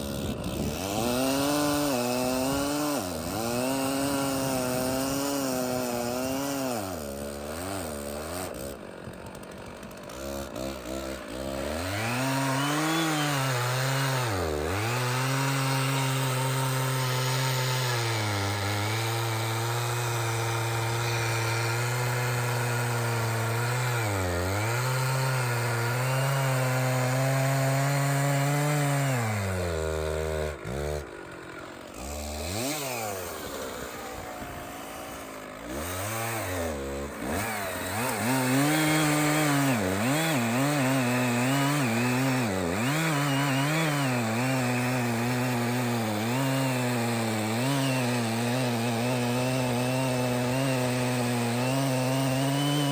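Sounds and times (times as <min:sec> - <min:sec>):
chainsaw cutting log: 0:00.0 - 0:52.9.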